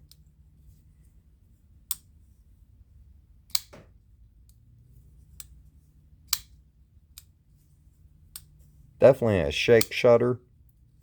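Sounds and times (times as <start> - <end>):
pocket knife clicking open and shut: 6.3 - 6.5.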